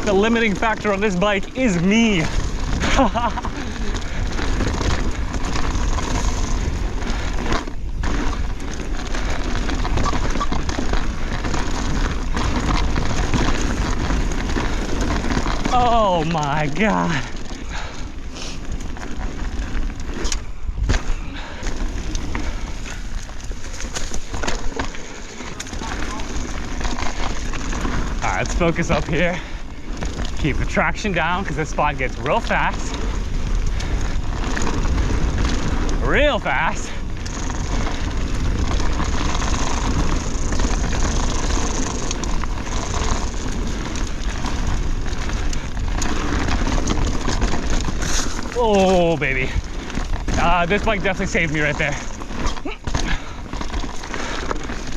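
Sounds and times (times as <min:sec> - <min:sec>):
bike knocks and rattles: 0:00.0 - 0:54.9
bike tyres rolling over dirt: 0:00.0 - 0:54.9
wind rumble on microphone: 0:01.5 - 0:15.8.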